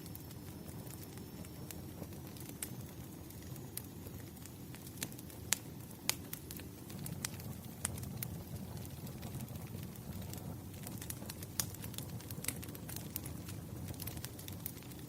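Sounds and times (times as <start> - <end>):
wood fire crackling and popping: 0.0 - 15.0.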